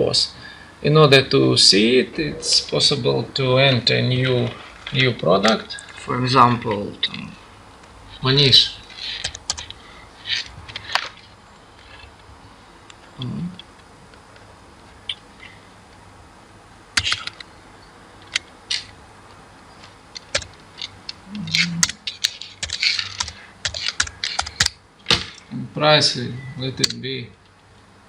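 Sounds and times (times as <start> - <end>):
computer keyboard keystrokes: 9.2 - 9.8, 17.0 - 17.4, 20.2 - 20.9, 21.8 - 25.4.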